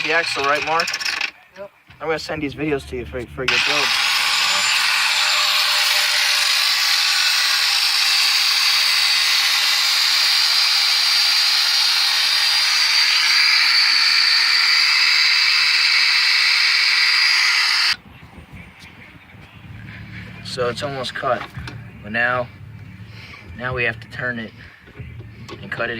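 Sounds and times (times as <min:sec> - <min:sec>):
angle grinder cutting steel: 0:00.0 - 0:01.4, 0:03.5 - 0:18.0.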